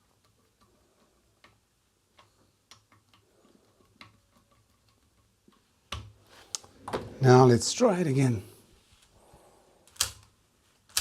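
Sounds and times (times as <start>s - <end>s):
small clicks and taps: 0.0s - 6.7s.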